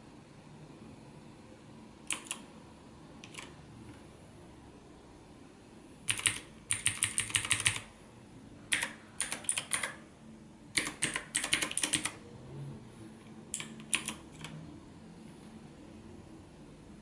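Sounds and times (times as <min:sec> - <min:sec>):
clicky keyboard keystrokes: 0:02.0 - 0:02.5, 0:03.2 - 0:04.0, 0:06.1 - 0:07.9, 0:08.7 - 0:10.0, 0:10.7 - 0:12.2, 0:13.2 - 0:14.6.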